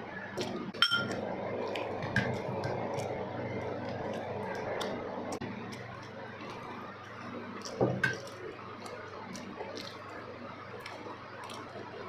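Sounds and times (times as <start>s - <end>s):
wet chewing: 0.4s - 12.0s
metallic clink: 0.8s - 1.1s.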